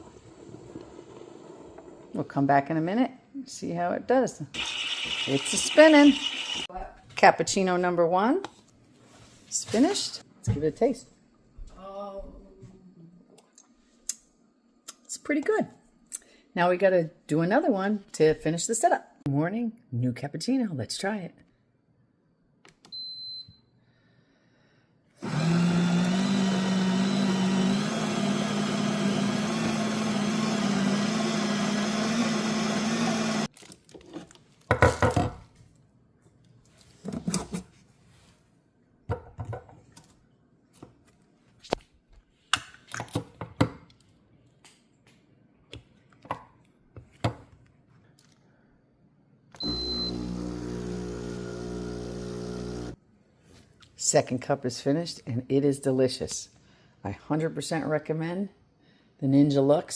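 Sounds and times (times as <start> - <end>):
espresso machine motor running: 4.6 - 6.6, 25.3 - 33.5, 49.6 - 53.0.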